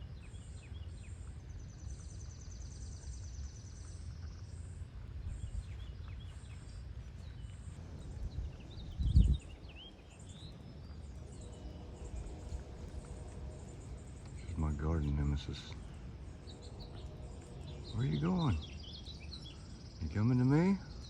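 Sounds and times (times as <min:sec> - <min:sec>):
bird chirps: 0:00.0 - 0:21.0
wind rumble on microphone: 0:00.0 - 0:21.0
insects chirping: 0:09.5 - 0:21.0.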